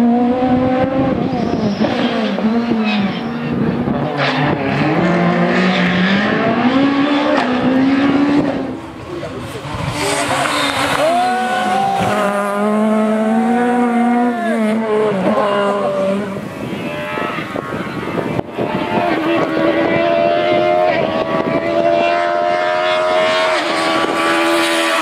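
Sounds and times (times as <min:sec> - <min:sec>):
car engine at high revs: 0:00.0 - 0:25.0.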